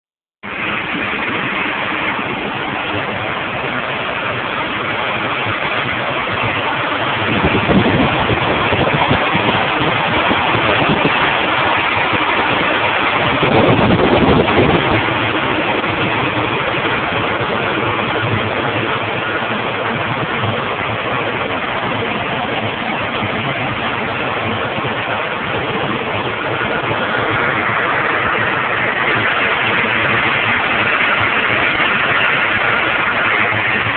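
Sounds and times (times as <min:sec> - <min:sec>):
car engine idling: 0:00.4 - 0:33.9.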